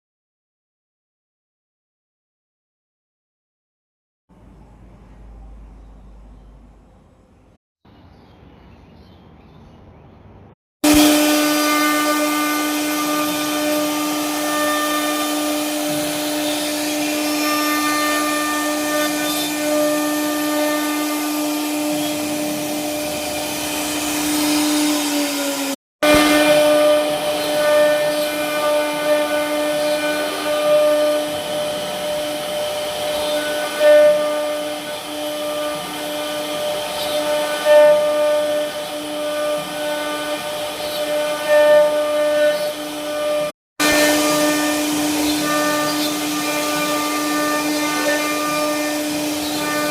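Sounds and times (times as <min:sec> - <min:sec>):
cnc router spindle whine: 0:10.8 - 0:49.9.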